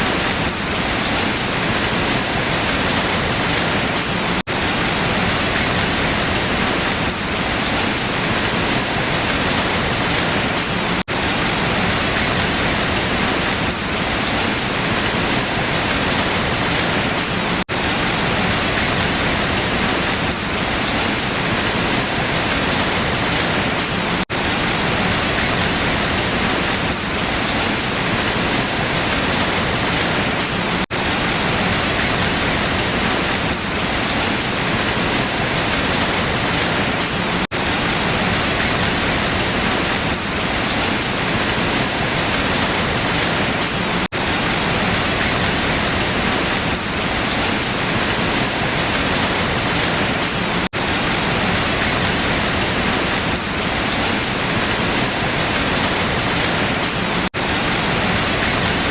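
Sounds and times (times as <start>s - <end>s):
heavy rain on leaves: 0.0s - 58.9s.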